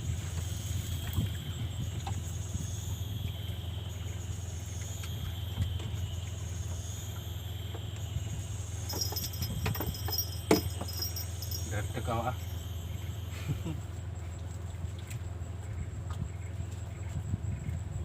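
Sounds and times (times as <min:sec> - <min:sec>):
fast pulsing chirp: 0:00.0 - 0:14.2
constant low hum: 0:00.0 - 0:18.0
insects chirping: 0:00.0 - 0:18.0.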